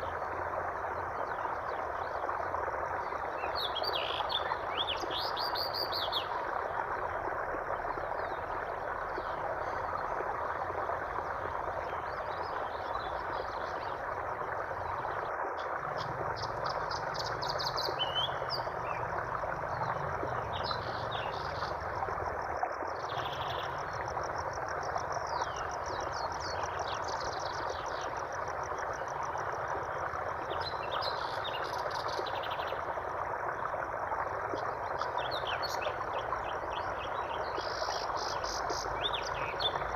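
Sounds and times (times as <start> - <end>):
flowing water rushing: 0.0 - 39.9
small birds chirping: 16.0 - 19.1.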